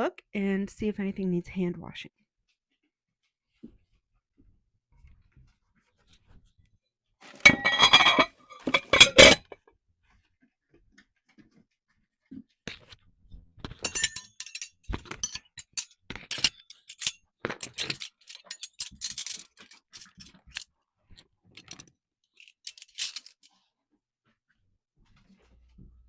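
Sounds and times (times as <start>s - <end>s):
dishes and cutlery clinking: 7.4s - 9.6s, 13.7s - 20.6s.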